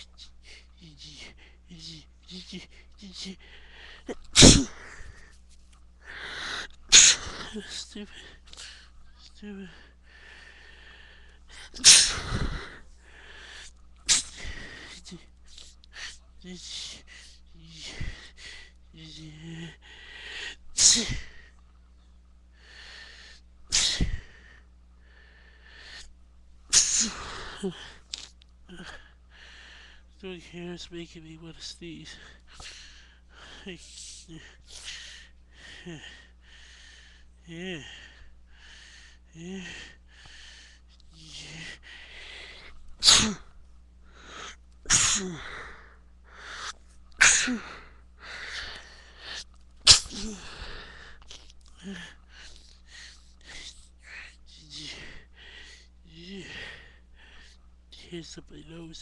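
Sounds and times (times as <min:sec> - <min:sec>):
breathy in-breath: 0:00.2 - 0:05.4, 0:06.0 - 0:13.7, 0:14.3 - 0:21.6, 0:22.5 - 0:26.1, 0:28.7 - 0:30.1, 0:32.1 - 0:43.4, 0:45.2 - 0:46.8, 0:47.4 - 0:49.5, 0:50.1 - 0:57.6
person sneezing: 0:04.1 - 0:05.0, 0:06.9 - 0:08.2, 0:11.6 - 0:12.8, 0:14.1 - 0:14.6, 0:20.8 - 0:21.4, 0:23.7 - 0:24.2, 0:26.7 - 0:29.0, 0:43.0 - 0:43.5, 0:44.9 - 0:45.6, 0:46.6 - 0:47.8, 0:48.6 - 0:52.0.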